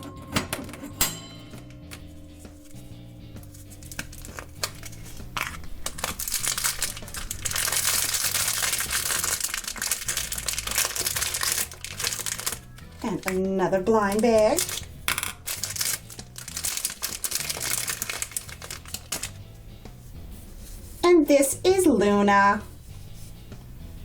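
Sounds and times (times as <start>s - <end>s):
background music: 0.0s - 24.0s
plastic bag crinkling: 3.4s - 19.4s.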